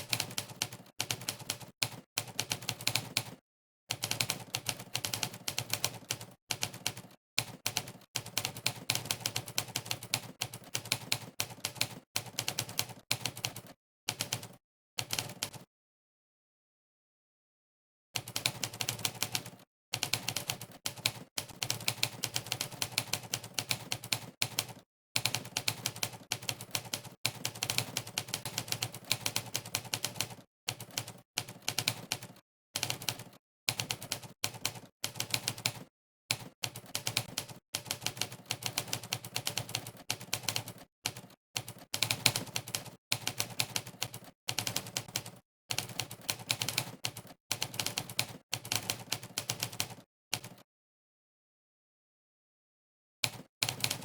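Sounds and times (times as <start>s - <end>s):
typewriter keystroke clacks: 18.2s - 50.6s, 53.2s - 54.0s.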